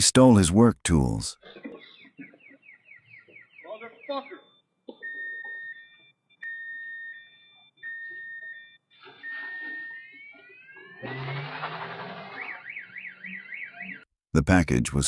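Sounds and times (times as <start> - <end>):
car alarm cycling tones: 2.3 - 14.1.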